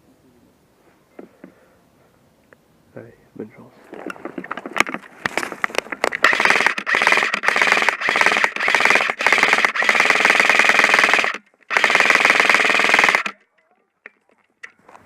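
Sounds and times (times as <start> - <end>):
airsoft rifle firing bursts: 6.2 - 13.4.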